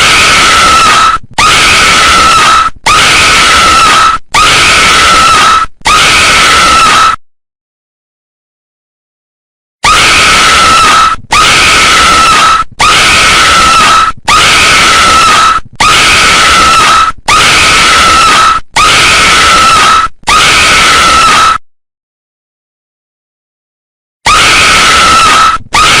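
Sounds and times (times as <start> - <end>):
raspy harsh girl screaming: 0.0 - 7.2, 9.8 - 21.6, 24.3 - 26.0.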